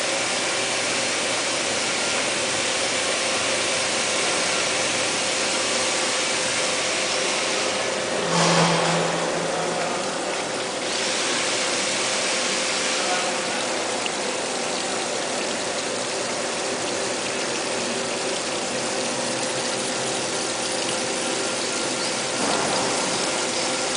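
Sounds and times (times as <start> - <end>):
hiss of flowing coolant: 0.0 - 23.9
grinding machine running: 7.2 - 12.7.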